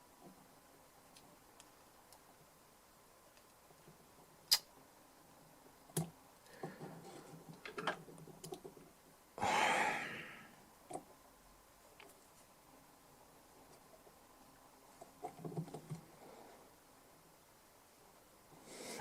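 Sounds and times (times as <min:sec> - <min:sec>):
short hiss: 0:09.4 - 0:10.5.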